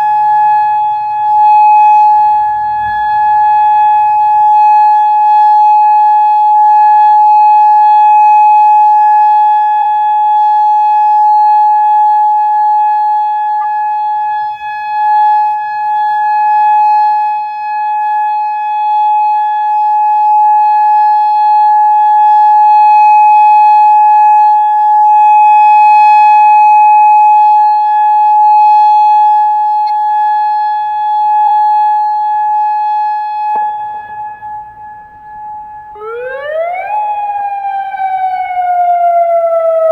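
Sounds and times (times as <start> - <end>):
warning siren steady high tone: 0.0 - 39.9.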